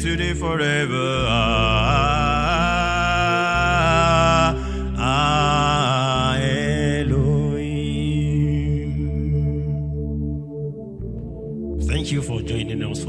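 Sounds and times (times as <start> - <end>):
person singing: 0.0 - 9.8.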